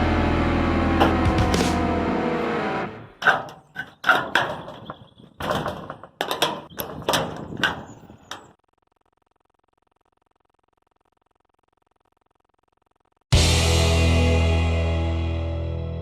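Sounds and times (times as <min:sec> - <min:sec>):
background music: 0:00.0 - 0:03.2, 0:13.4 - 0:16.0.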